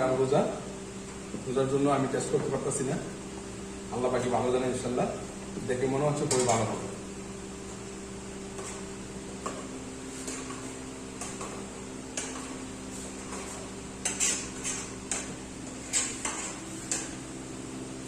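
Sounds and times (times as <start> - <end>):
steady low hum: 0.0 - 18.0
spoon scraping cooking pot: 12.1 - 17.1.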